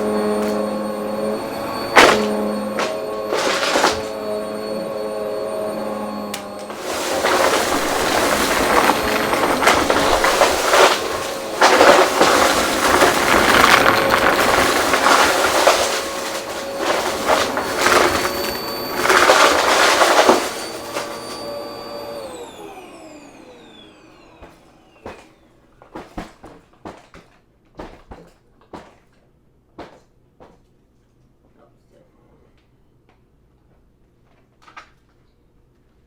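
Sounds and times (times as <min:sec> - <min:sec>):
debris crackling in vacuum: 0:00.0 - 0:24.2
vacuum motor spinning down: 0:00.0 - 0:25.5
vacuum cleaner running: 0:00.0 - 0:25.7.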